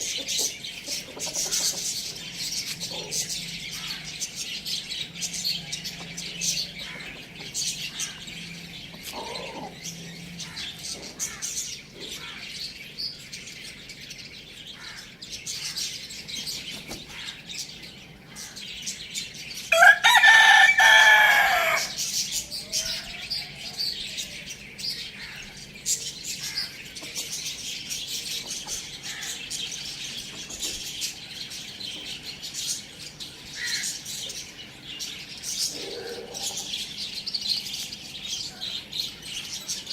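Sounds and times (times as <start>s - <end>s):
small birds chirping: 0.0s - 39.9s
rooster crowing: 19.7s - 22.0s.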